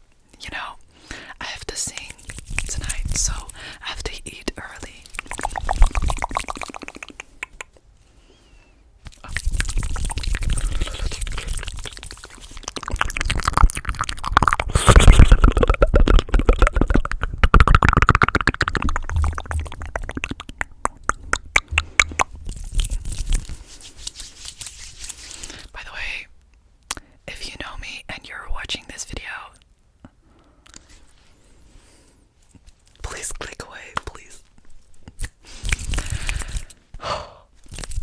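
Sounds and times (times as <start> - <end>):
wet mouth clicks and smacks: 1.9 - 4.0, 4.8 - 7.9, 9.0 - 25.7, 30.6 - 31.0, 32.5 - 36.8, 37.6 - 38.0.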